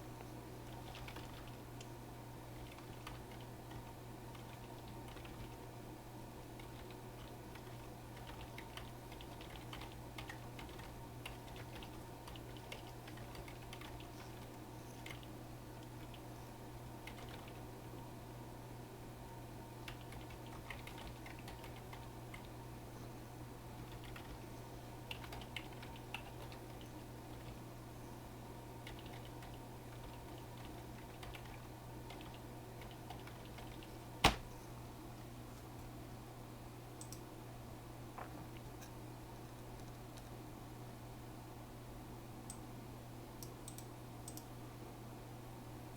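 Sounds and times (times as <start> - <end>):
low steady hum: 0.0 - 45.9
typing on computer keyboard: 0.7 - 1.6, 2.6 - 5.6, 6.6 - 16.3, 17.0 - 17.6, 19.8 - 22.5, 23.8 - 24.4, 25.1 - 27.6, 28.8 - 33.9.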